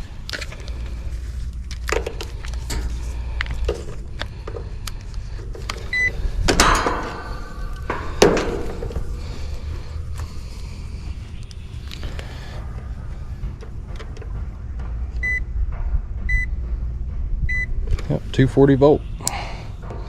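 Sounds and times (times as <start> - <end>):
hands handling tools: 0.0 - 10.3
steady low hum: 0.0 - 20.0.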